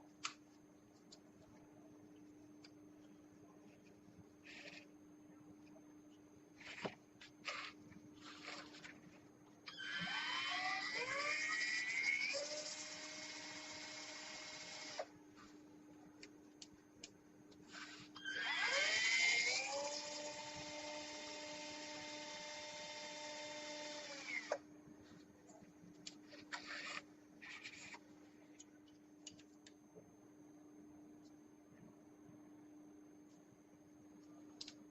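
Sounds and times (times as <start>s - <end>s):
small clicks and handling noises: 0.1s - 4.9s, 25.0s - 29.8s, 34.2s - 34.9s
surgical drill motor whine: 9.6s - 15.1s, 17.7s - 24.7s.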